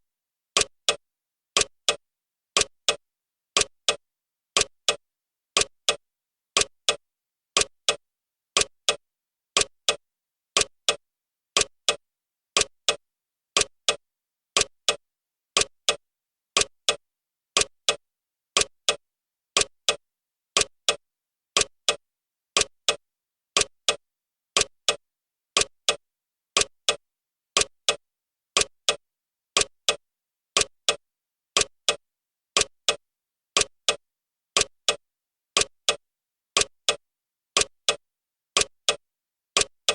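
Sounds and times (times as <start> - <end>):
clock ticking: 0.6 - 1.0, 1.6 - 2.0, 2.6 - 3.0, 3.6 - 4.0, 4.6 - 5.0, 5.6 - 6.0, 6.6 - 7.0, 7.6 - 8.0, 8.6 - 9.0, 9.6 - 10.0, 10.6 - 11.0, 11.6 - 12.0, 12.6 - 13.0, 13.6 - 14.0, 14.6 - 15.0, 15.6 - 16.0, 16.6 - 17.0, 17.6 - 18.0, 18.6 - 19.0, 19.6 - 20.0, 20.6 - 21.0, 21.6 - 22.0, 22.6 - 23.0, 23.6 - 24.0, 24.6 - 25.0, 25.6 - 26.0, 26.6 - 27.0, 27.6 - 28.0, 28.6 - 29.0, 29.6 - 30.0, 30.6 - 31.0, 31.6 - 32.0, 32.6 - 33.0, 33.6 - 34.0, 34.6 - 35.0, 35.6 - 36.0, 36.6 - 37.0, 37.6 - 38.0, 38.6 - 39.0, 39.6 - 39.9.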